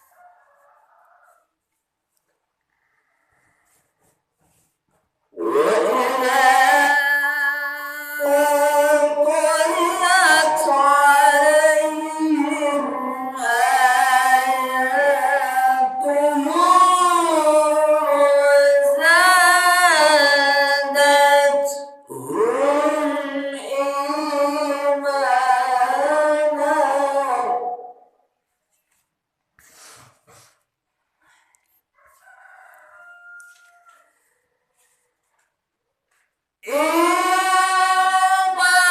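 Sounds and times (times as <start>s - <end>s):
person chanting melodically: 5.4s - 28.2s, 36.6s - 38.9s.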